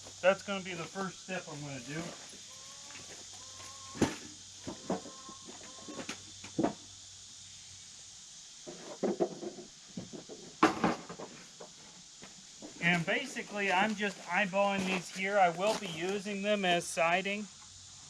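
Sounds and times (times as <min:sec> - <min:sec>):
insects hissing: 0:00.0 - 0:18.0
wooden boards clattering: 0:08.7 - 0:11.4.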